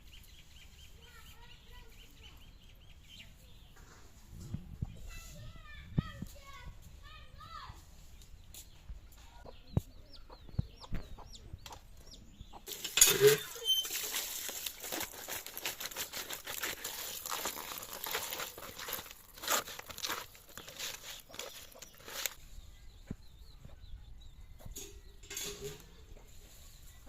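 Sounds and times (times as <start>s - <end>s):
chick peeps: 9.1s - 12.7s
chickens clucking: 9.1s - 13.8s.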